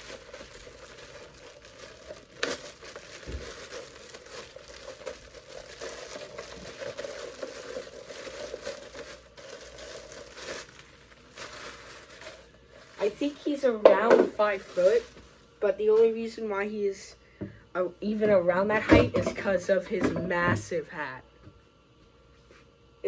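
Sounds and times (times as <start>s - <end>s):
plastic packaging crinkling: 0.0s - 16.4s.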